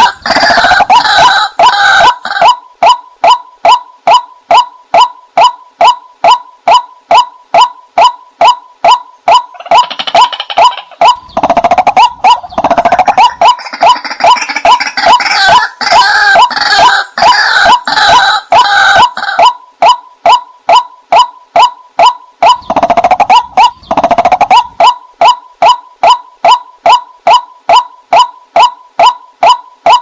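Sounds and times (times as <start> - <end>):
rough bird calls: 8.0 - 19.6, 21.6 - 30.0
bird call sharp repeating note: 19.4 - 30.0.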